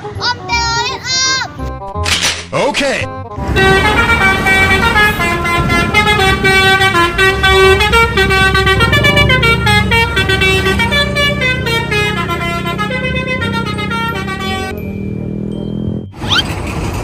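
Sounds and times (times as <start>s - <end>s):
bus horn playing a tune: 3.2s - 14.8s.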